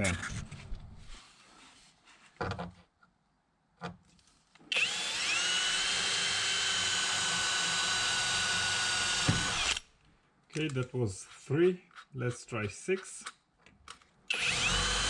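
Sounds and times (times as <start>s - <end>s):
electric drill whining: 4.7s - 9.8s, 14.3s - 15.0s.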